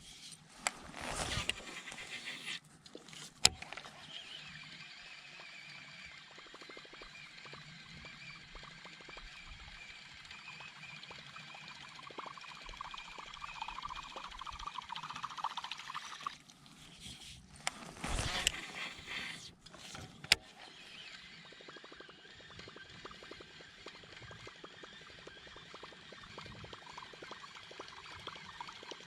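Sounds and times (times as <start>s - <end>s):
fishing reel whirring and clicking: 0.1s - 29.0s.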